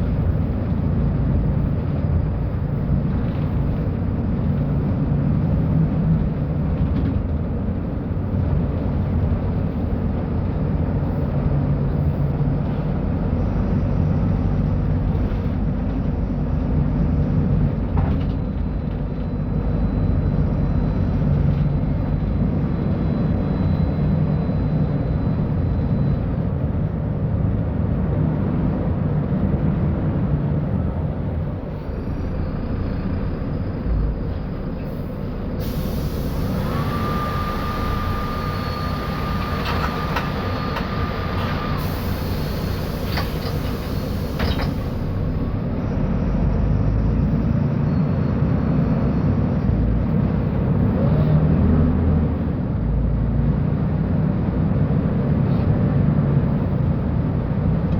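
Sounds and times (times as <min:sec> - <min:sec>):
bus diesel engine drone: 0:00.0 - 0:57.9.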